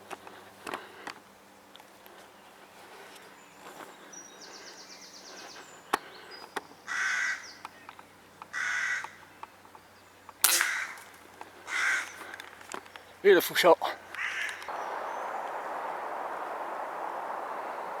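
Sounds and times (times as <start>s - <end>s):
rapid bird trill: 2.4s - 13.3s, 14.0s - 16.3s
crow cawing: 6.9s - 7.8s, 8.5s - 9.3s, 10.6s - 12.6s, 14.0s - 14.7s.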